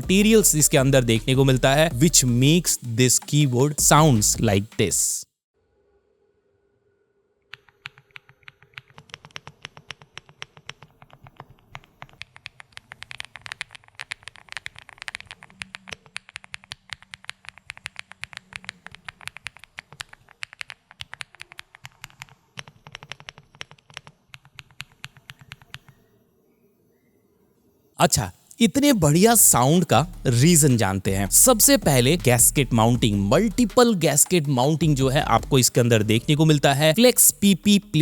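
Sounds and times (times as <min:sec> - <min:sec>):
fast mechanical keyboard typing: 0:07.5 - 0:26.0.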